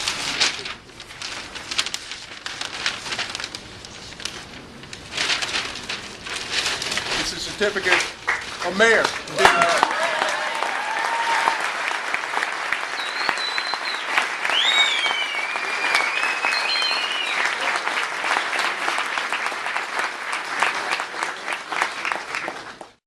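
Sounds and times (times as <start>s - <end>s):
audience applauding: 7.7s - 23.0s
high calls from audience: 9.2s - 12.2s.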